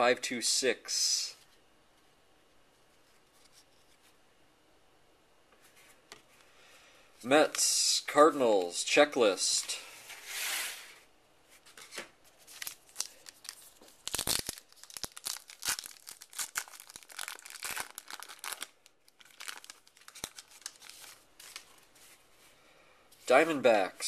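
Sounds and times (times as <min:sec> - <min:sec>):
wrapper tearing and crinkling: 0:12.5 - 0:21.8.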